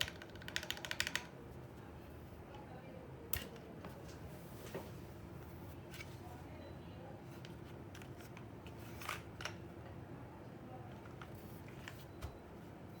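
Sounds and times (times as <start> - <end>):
mechanical keyboard typing: 0.0 - 1.3.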